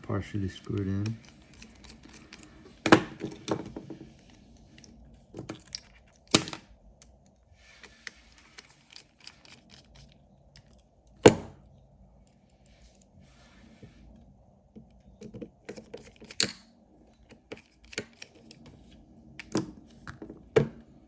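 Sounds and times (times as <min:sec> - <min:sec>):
metal tool parts clicking: 0:00.7 - 0:03.8, 0:04.6 - 0:07.2, 0:07.8 - 0:11.4, 0:15.2 - 0:16.6, 0:17.2 - 0:18.7.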